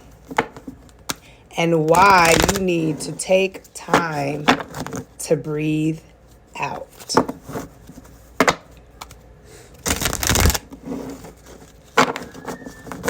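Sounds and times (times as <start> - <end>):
cards being shuffled: 1.8 - 2.8, 9.8 - 13.0.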